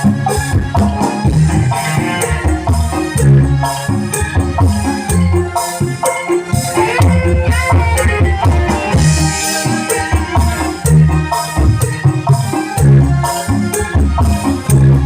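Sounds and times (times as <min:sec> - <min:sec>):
loud music with heavy bass: 0:00.0 - 0:15.0.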